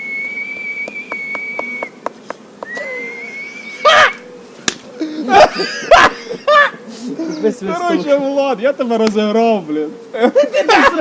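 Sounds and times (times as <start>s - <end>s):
person whistling a high note: 0.0s - 1.9s, 2.7s - 3.8s.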